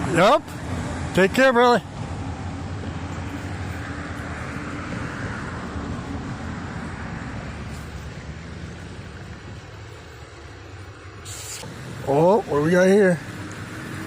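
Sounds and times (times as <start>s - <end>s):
vehicle engine rumble: 0.0s - 14.0s
rushing water: 4.0s - 14.0s.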